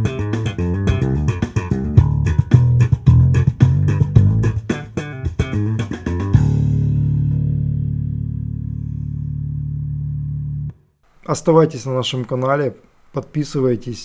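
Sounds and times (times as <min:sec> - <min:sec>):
bass guitar notes: 0:00.0 - 0:10.8.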